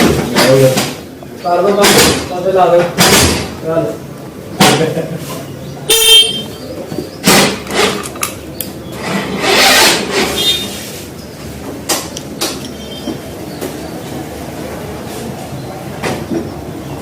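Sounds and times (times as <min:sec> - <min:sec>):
knocks and clanks: 0:00.0 - 0:03.6, 0:06.9 - 0:08.4.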